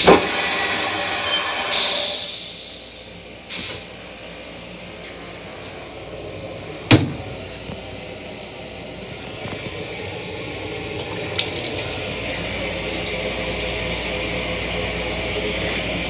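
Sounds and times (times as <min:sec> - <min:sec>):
train car low rumble: 0:00.0 - 0:16.0
loud clunk: 0:06.9 - 0:07.5.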